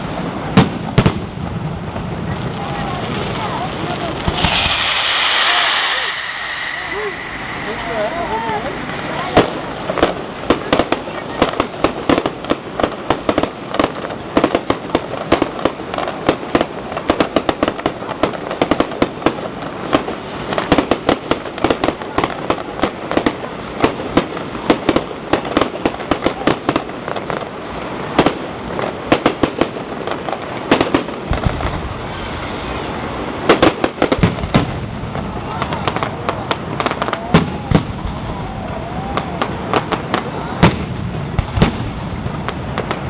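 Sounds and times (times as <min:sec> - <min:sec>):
steady low rumble: 0:00.0 - 0:12.5
fireworks crackling and banging: 0:00.0 - 0:43.0.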